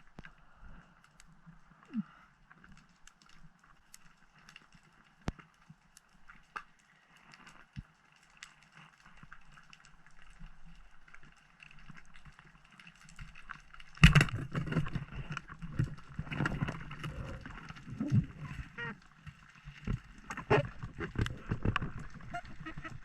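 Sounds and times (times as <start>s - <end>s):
underwater clicks: 13.2s - 23.0s
rush of water with knocks: 13.8s - 17.4s, 19.3s - 23.0s.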